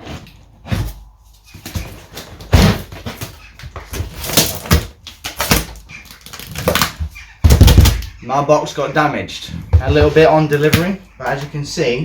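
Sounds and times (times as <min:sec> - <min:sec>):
cardboard box rustling and scraping: 0:00.0 - 0:04.9.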